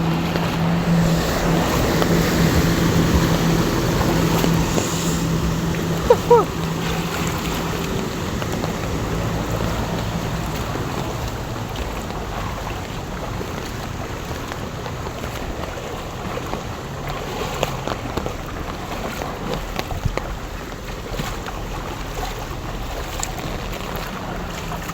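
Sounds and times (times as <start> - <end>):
heavy rain over water: 0.0 - 24.9.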